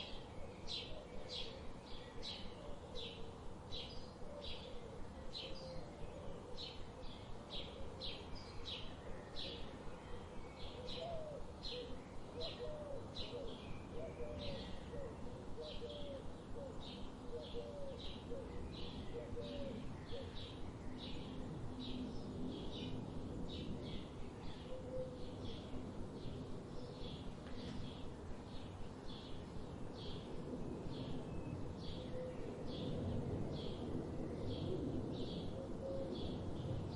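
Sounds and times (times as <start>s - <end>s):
lower curved bird calls: 0.0s - 23.0s.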